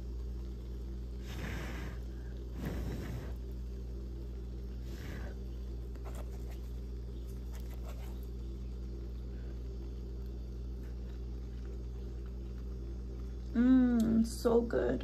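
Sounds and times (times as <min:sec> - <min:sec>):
low electrical hum: 0:00.0 - 0:15.0
chewing noodles: 0:04.8 - 0:13.6.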